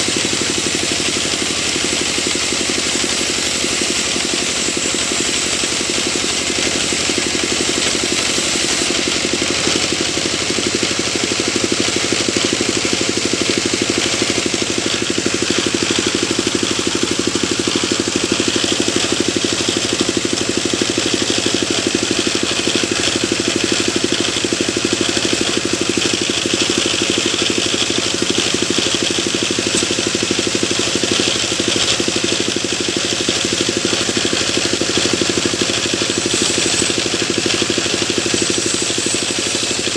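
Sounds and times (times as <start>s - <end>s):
sawmill engine drone: 0.0s - 39.9s
rushing hiss: 38.3s - 39.9s.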